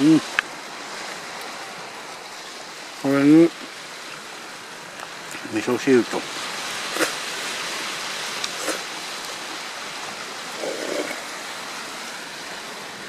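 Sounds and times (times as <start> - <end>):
steady rushing hiss: 0.0 - 13.0
soup slurp: 6.8 - 7.3, 8.4 - 8.9, 10.5 - 11.2.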